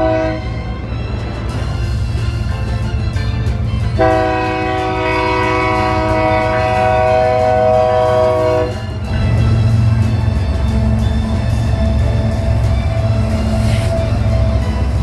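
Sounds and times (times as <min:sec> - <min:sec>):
train air horn blast: 0:00.0 - 0:00.5, 0:03.9 - 0:09.9, 0:13.0 - 0:15.0.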